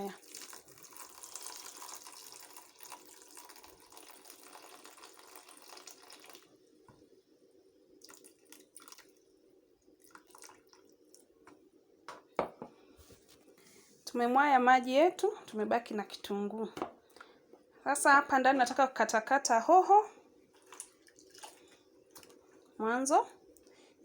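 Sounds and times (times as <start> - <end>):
water splashing from a bowl: 0.0 - 6.5, 8.0 - 9.2, 10.0 - 11.2, 20.6 - 22.4
water dripping: 0.0 - 6.6, 8.0 - 9.2, 10.0 - 11.6, 20.5 - 22.8.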